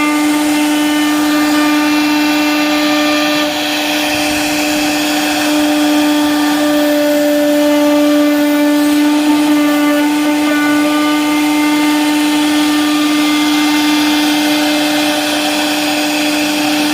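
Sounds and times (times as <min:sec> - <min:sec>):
power tool motor whining: 0:00.0 - 0:16.9.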